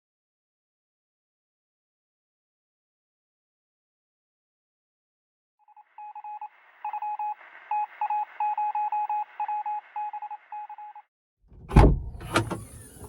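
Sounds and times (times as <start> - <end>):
loud thump: 11.5 - 12.8.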